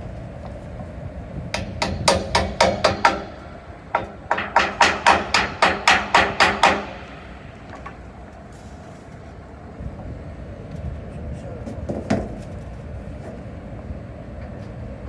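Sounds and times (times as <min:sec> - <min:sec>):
hammer blows: 0:01.5 - 0:08.2.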